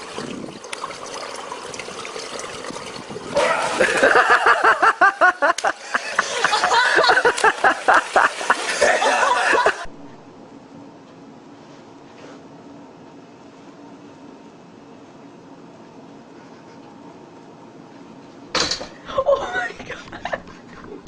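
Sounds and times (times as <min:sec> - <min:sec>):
people laughing hard: 0:03.4 - 0:09.9.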